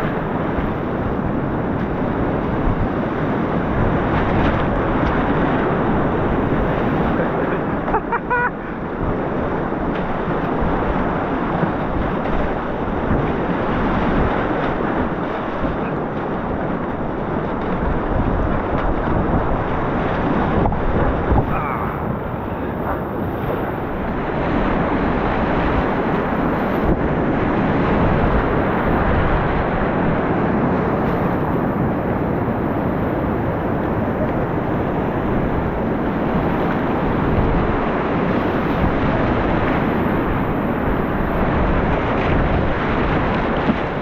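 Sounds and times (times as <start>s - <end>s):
wind buffeting microphone: 0.0s - 44.0s
whitewater rapids rushing: 20.5s - 26.8s.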